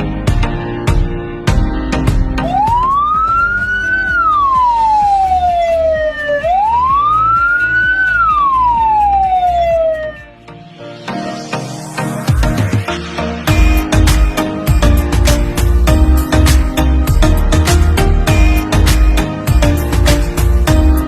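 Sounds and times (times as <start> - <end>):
background music: 0.0 - 21.0
ambulance siren wailing: 2.4 - 10.4.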